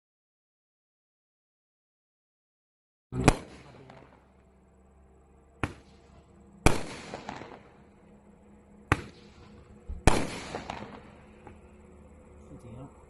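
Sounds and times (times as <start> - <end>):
firework bangs with crackle: 3.2 - 4.2, 5.6 - 6.0, 6.6 - 7.8, 8.9 - 11.1.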